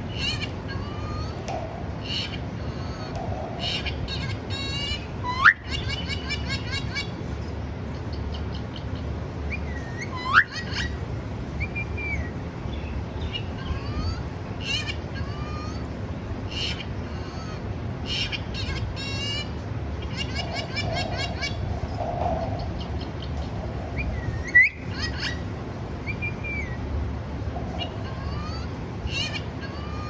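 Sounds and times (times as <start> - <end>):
parrot chirping: 0.1 - 7.1, 19.0 - 25.4
parrot rising whistles: 9.8 - 10.5.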